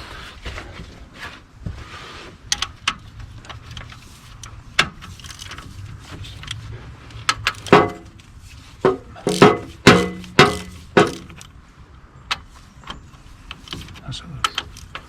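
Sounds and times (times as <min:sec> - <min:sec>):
metal tools clinking on engine: 0:07.3 - 0:08.2, 0:08.9 - 0:11.6.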